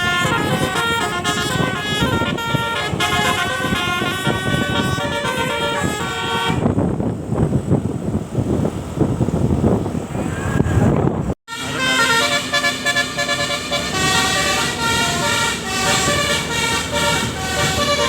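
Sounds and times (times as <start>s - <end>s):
multi-tone bus horn melody: 0.0s - 7.0s, 11.5s - 18.0s.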